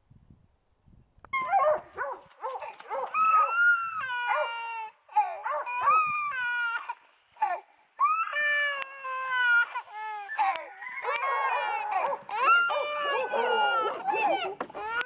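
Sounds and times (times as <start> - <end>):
dog yipping: 1.4 - 4.7, 5.3 - 6.6, 10.3 - 15.0
dog howling and whining: 2.7 - 4.8, 5.4 - 6.6, 10.2 - 15.0.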